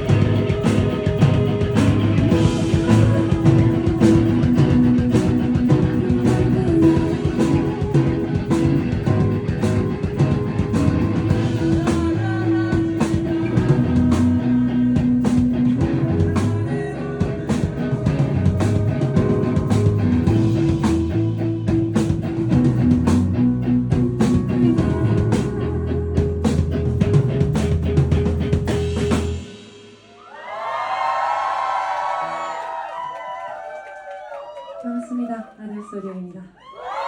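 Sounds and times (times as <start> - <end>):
drum hits: 0.0 - 12.1, 17.2 - 23.4
rock band playing: 0.0 - 33.1.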